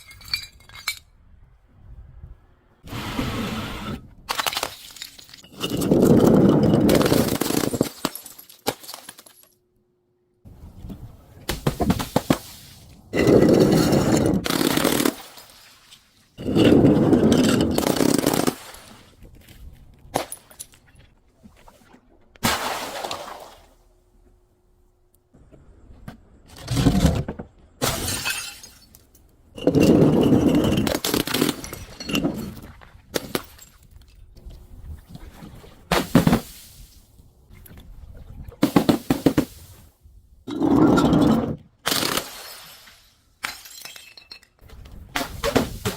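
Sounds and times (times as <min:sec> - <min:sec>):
glass bottles crushed and shattering: 0:00.0 - 0:01.1, 0:04.3 - 0:09.5, 0:16.4 - 0:18.6, 0:27.8 - 0:34.2, 0:40.5 - 0:44.6.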